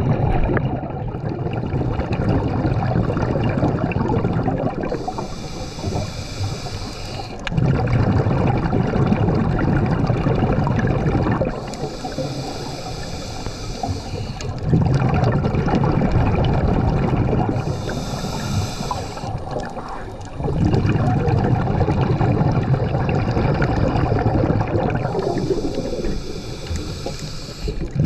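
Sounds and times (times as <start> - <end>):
exhaled bubbles rumbling: 0.0 - 28.0
regulator inhale hiss: 4.9 - 7.5, 11.4 - 14.6, 17.5 - 20.5, 25.0 - 28.0.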